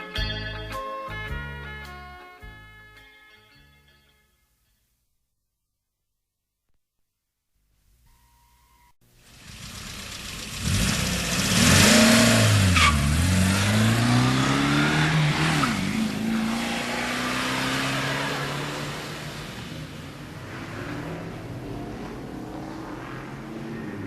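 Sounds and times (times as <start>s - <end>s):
car engine revving: 9.3s - 24.0s.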